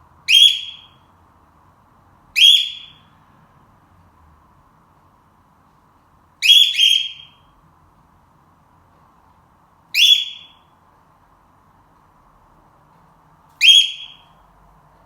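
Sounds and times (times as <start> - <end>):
cockatiel alarm calls: 0.3 - 1.0, 2.4 - 3.0, 6.4 - 7.4, 9.9 - 10.6, 13.6 - 14.3.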